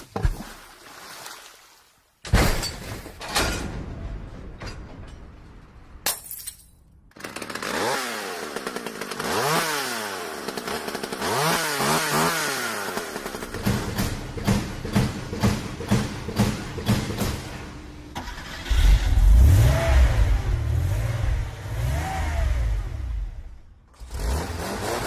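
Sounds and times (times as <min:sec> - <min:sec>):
small engine revving: 0:07.3 - 0:14.2, 0:18.2 - 0:25.0.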